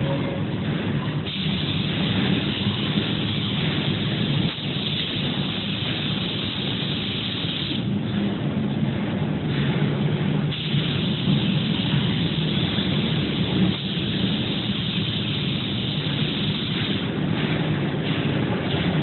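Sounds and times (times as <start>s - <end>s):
machine hum: 0.0s - 19.0s
paint spraying hiss: 1.3s - 7.9s, 10.5s - 17.1s.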